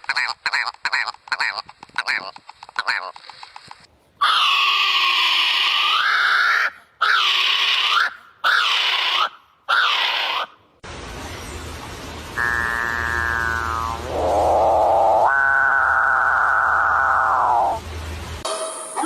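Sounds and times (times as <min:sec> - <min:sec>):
background hum: 0:10.4 - 0:18.4.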